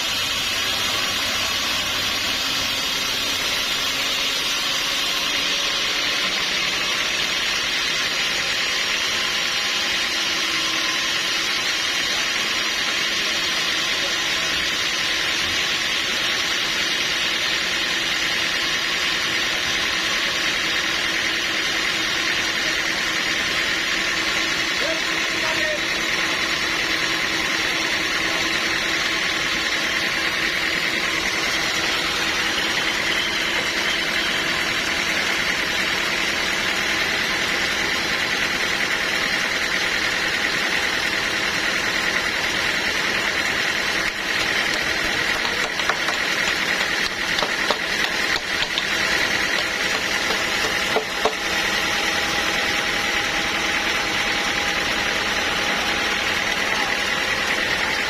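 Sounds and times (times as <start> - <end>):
high mechanical whine: 0.0 - 58.0
sawmill machinery drone: 0.0 - 58.0.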